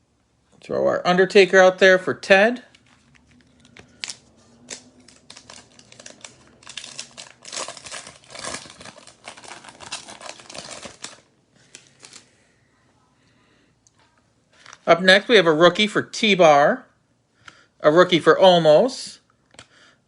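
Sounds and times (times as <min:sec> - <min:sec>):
wrapper tearing and crinkling: 0:03.3 - 0:12.3.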